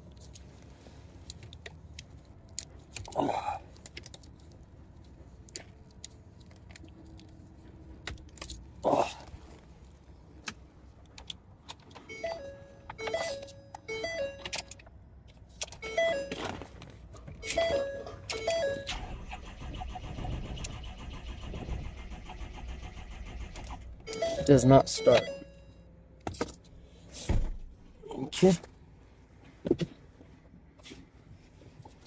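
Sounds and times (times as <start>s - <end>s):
dashboard warning chimes: 12.0s - 14.9s, 15.7s - 16.7s, 17.3s - 19.3s, 24.0s - 26.0s.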